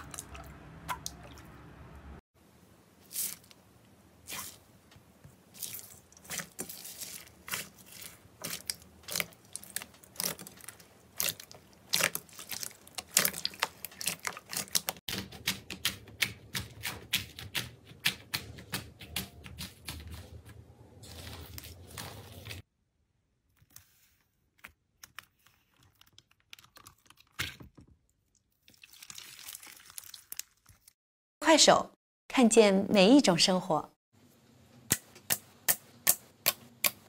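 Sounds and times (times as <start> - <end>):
crunchy slime crackling: 5.5 - 15.0.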